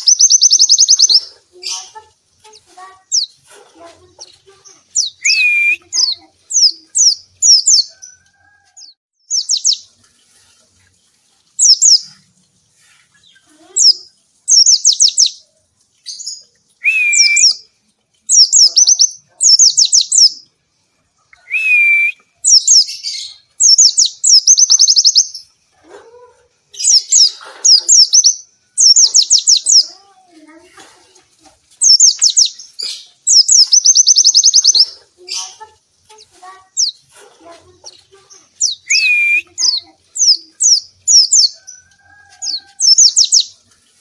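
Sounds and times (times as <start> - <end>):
bird chirping in rapid bursts: 0.0 - 3.4, 4.2 - 8.2, 8.8 - 10.0, 11.6 - 12.2, 13.2 - 20.5, 22.4 - 25.6, 26.7 - 30.0, 31.6 - 37.1, 37.8 - 43.7
lower slurred bird whistle: 5.2 - 5.9, 16.8 - 17.6, 21.4 - 22.2, 38.8 - 39.6.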